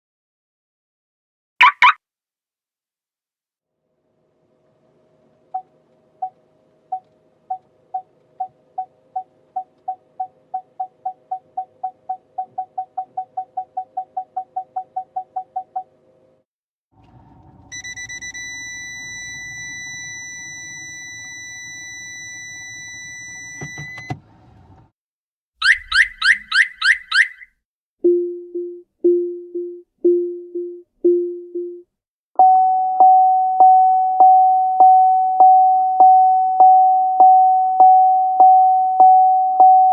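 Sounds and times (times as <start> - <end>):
steady high warning tone: 17.7 - 24.0
low warning beeps: 17.7 - 24.1
car warning beeps: 17.7 - 24.2, 25.6 - 27.4.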